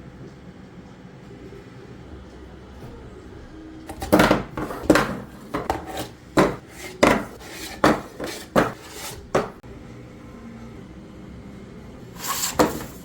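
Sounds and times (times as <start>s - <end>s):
hard parts clattering and knocking: 3.9s - 9.6s.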